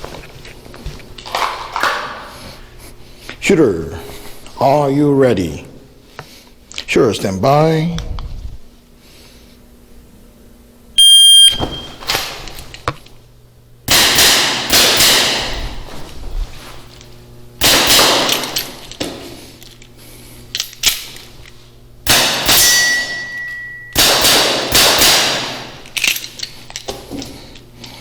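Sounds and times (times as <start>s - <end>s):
shot timer beep: 11.0s - 12.0s, 22.6s - 24.0s
airsoft revolver shots: 13.9s - 15.6s, 17.6s - 18.7s, 22.1s - 23.1s, 24.0s - 25.8s
steady ringing tone: 22.4s - 24.0s.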